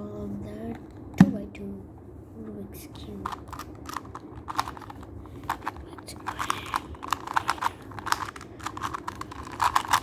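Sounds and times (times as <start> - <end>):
puzzle cube clicking: 3.3 - 10.0.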